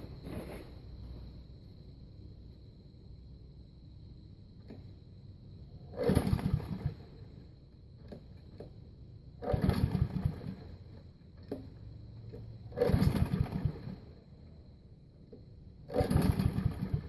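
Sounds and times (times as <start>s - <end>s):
lawnmower engine pull-start cranking: 5.9s - 7.3s, 9.4s - 14.1s, 15.9s - 17.0s.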